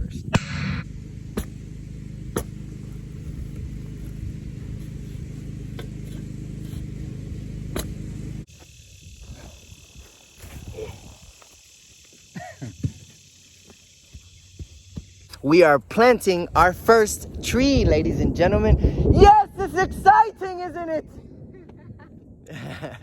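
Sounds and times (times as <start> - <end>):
engine running: 0.0 - 10.1, 11.3 - 18.0.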